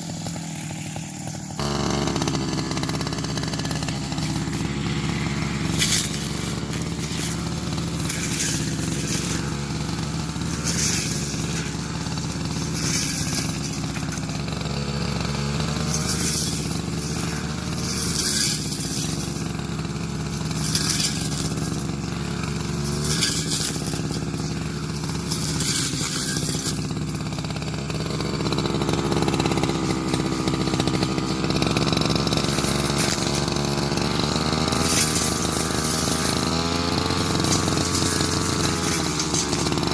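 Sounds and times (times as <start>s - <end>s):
grass cutter engine running: 0.0s - 39.9s
swish through grass: 0.2s - 1.8s, 2.8s - 14.4s, 34.8s - 36.6s, 37.2s - 39.9s.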